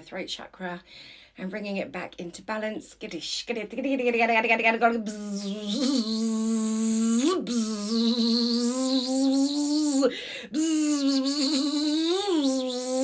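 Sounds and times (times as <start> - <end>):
woman breathing in: 0.9 - 1.4, 10.1 - 10.6.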